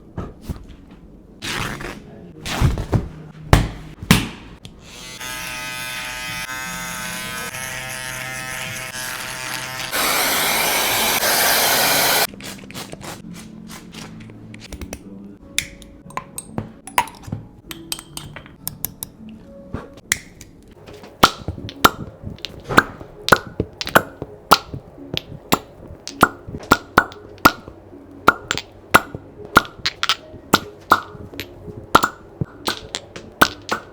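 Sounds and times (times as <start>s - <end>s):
electric buzz: 5.1s - 12.3s
sharp cracks and thumps: 20.1s - 33.9s.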